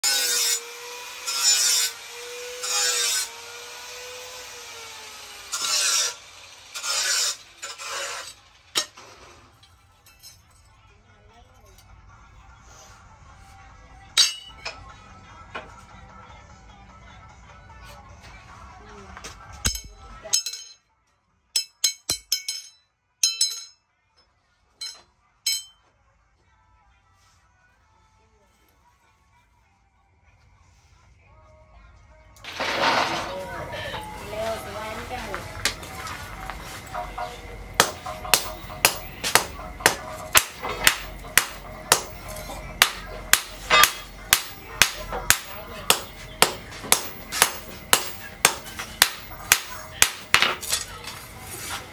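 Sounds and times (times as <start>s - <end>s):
hand tool rasping on workpiece: 0.0s - 9.0s, 37.2s - 50.9s
hammer striking steel on anvil: 6.8s - 9.1s, 14.2s - 14.9s, 19.6s - 20.8s, 21.6s - 23.8s, 24.8s - 25.8s, 36.8s - 51.1s.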